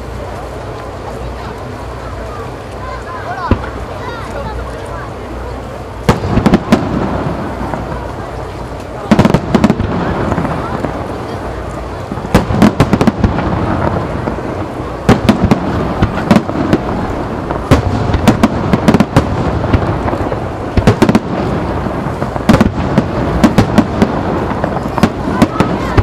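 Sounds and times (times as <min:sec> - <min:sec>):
rumble of echoing reports: 0:00.0 - 0:26.0
firework shells bursting: 0:01.6 - 0:26.0.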